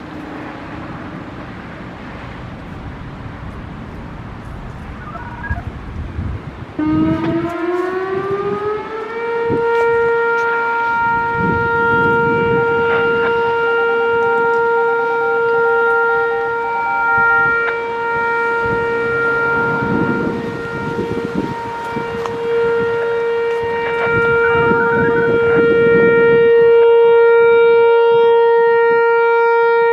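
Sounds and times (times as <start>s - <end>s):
background traffic: 0.0s - 29.9s
rising steady siren: 0.0s - 29.9s
radio scanner tone: 4.9s - 5.7s.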